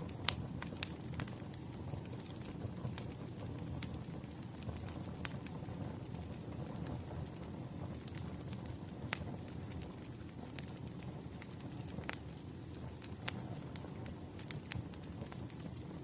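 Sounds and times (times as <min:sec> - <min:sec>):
burning logs crackling and popping: 0:00.0 - 0:16.0
wood fire rumbling: 0:00.0 - 0:16.0.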